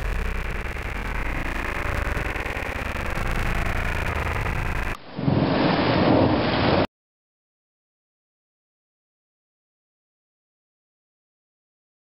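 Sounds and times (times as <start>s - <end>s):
steady rushing noise: 0.0s - 6.9s.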